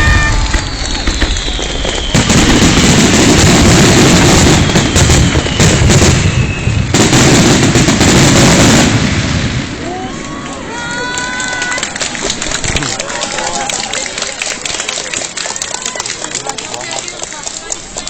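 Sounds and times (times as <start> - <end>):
fireworks whistles: 0.0 - 9.4
fireworks bursting and crackling: 0.0 - 13.2.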